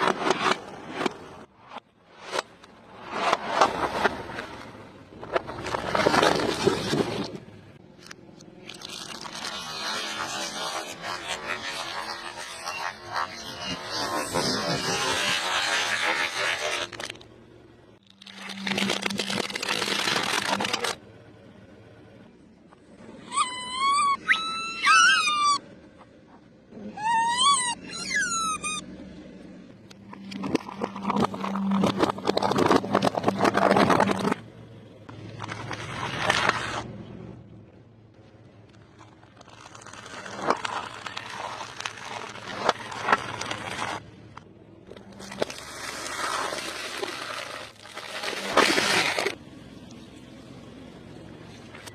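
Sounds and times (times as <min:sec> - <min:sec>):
car crunching over debris: 0:03.3 - 0:09.4, 0:44.9 - 0:49.4
high wavering squeals: 0:23.2 - 0:25.6, 0:26.8 - 0:29.0.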